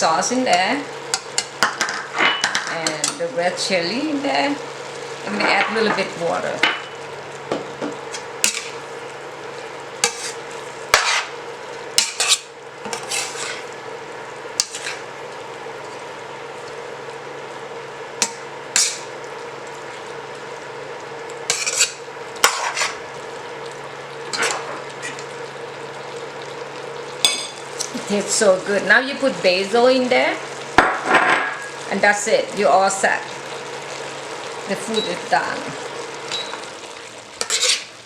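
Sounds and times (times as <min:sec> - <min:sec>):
steady hum: 0:00.0 - 0:38.0
utensil scraping and knocking pot: 0:10.0 - 0:11.3, 0:12.0 - 0:13.7, 0:21.5 - 0:23.0, 0:37.4 - 0:37.9
utensil stirring a pot: 0:10.0 - 0:11.3, 0:12.0 - 0:13.7, 0:37.4 - 0:38.0.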